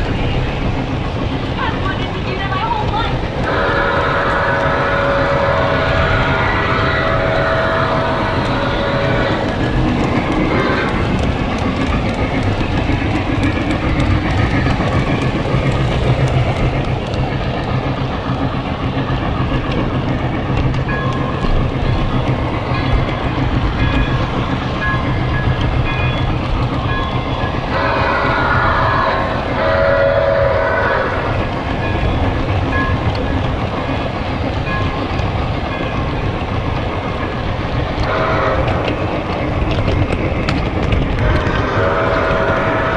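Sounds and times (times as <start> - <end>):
train rumbling past: 0.0 - 42.9
wheels clattering over rail joints: 0.0 - 42.9
train horn: 3.4 - 9.5, 27.7 - 31.3, 38.0 - 38.9, 41.2 - 42.9.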